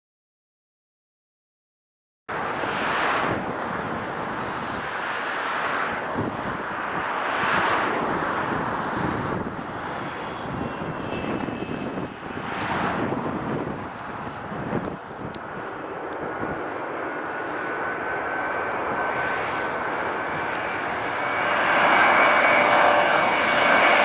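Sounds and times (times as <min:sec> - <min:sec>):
jet engines roaring: 0:02.3 - 0:24.0
faint high whine: 0:13.9 - 0:24.0.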